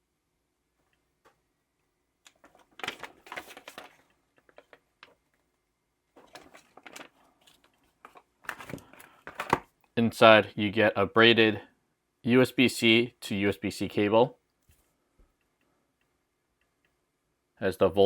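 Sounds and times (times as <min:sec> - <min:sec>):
cardboard and paper rustling: 0:02.3 - 0:05.3, 0:06.2 - 0:09.7.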